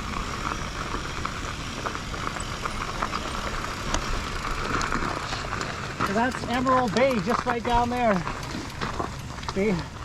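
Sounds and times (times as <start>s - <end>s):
bike rolling over dirt trail: 0.0s - 10.0s.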